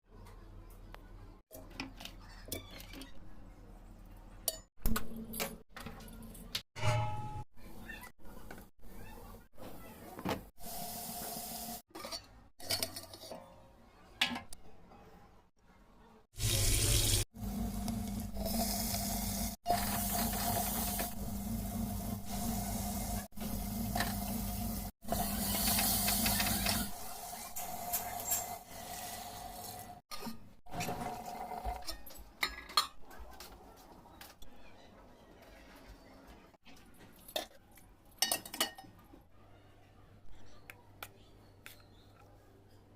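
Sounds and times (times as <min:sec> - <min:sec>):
pots and utensils clattering: 0:11.9 - 0:13.5, 0:19.7 - 0:21.2, 0:23.9 - 0:28.6, 0:29.6 - 0:33.5, 0:38.2 - 0:39.0.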